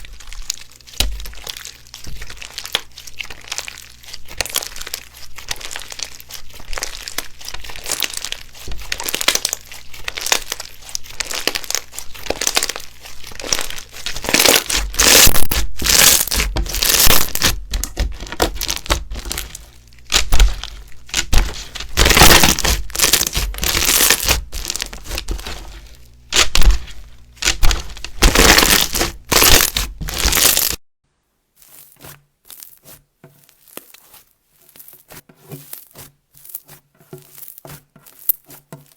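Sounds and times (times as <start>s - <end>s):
slime squished by hand crackling: 0.1s - 30.8s.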